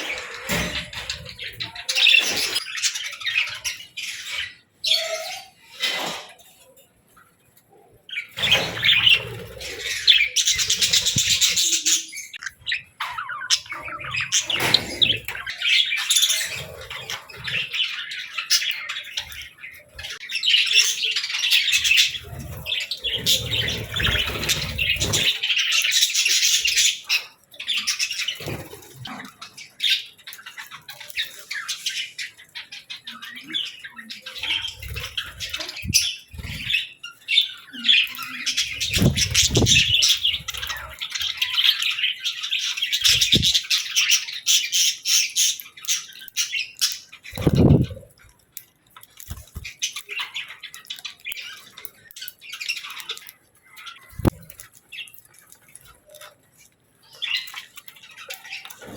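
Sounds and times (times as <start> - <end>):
budgerigars chattering: 8.1 - 30.2, 30.8 - 48.1.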